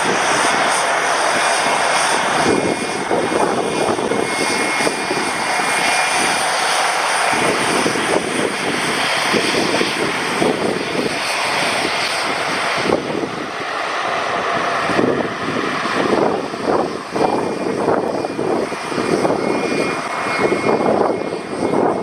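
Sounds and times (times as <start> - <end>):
jet engines roaring: 0.0 - 22.0.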